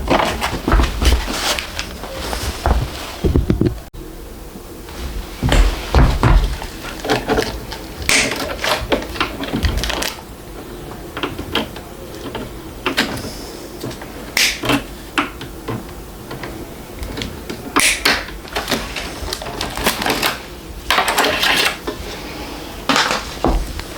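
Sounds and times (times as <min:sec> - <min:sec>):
packaging knocks and rustles: 0:00.0 - 0:03.9, 0:05.4 - 0:10.2.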